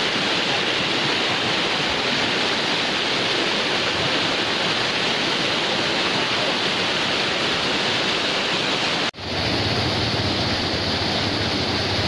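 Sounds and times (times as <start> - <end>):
waterfall pouring: 0.0 - 12.0.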